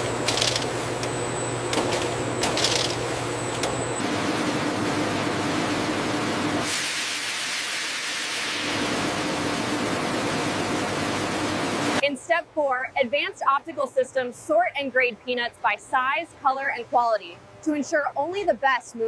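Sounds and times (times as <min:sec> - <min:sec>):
low machinery hum: 0:00.0 - 0:06.6.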